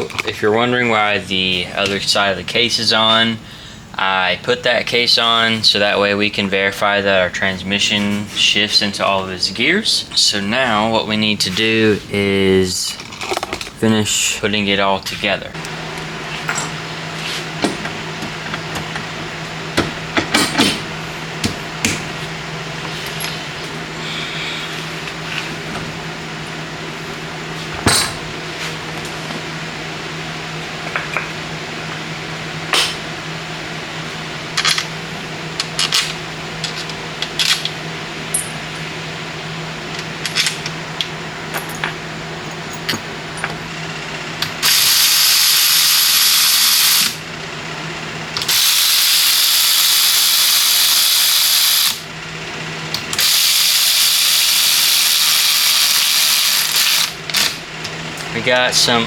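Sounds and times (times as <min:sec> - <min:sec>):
metal parts clinking: 0:34.6 - 0:34.9, 0:35.6 - 0:37.7, 0:38.3 - 0:38.8, 0:40.0 - 0:40.8
compressed-air tool hissing: 0:44.6 - 0:47.2, 0:48.5 - 0:52.0, 0:53.2 - 0:57.6.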